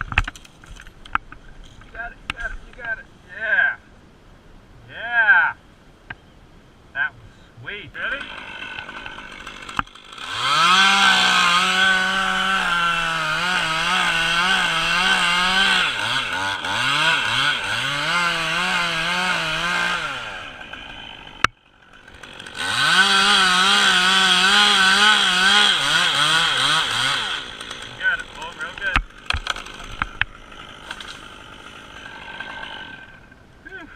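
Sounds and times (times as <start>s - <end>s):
chainsaw cutting wood: 8.0s - 33.4s.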